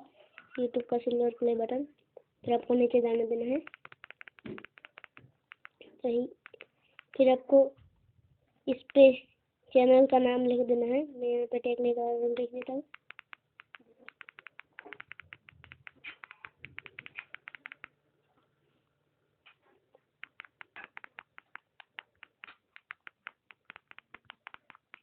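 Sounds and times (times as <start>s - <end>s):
phone keypad button clicking: 3.7s - 5.7s, 12.9s - 17.9s.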